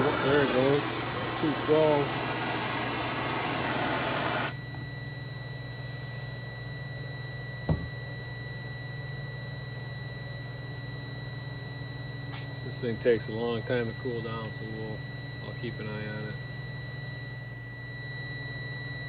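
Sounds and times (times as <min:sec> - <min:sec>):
loud steady hiss: 0:00.0 - 0:04.5
multimeter continuity beep: 0:04.0 - 0:19.0
knock: 0:07.7 - 0:08.0.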